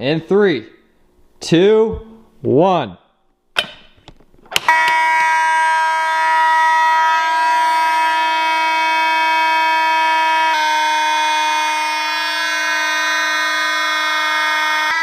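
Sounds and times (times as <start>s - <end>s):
fire alarm horns buzzing: 4.6s - 15.0s.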